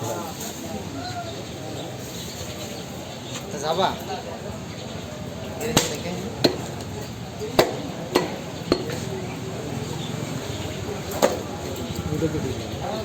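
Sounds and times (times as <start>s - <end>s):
steady background noise: 0.0s - 13.0s
knife chopping meat and bone: 5.7s - 9.1s.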